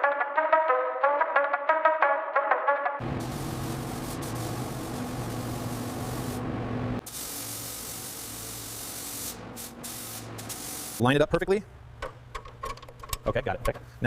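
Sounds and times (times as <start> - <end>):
air spray gun hissing: 3.0 - 11.0.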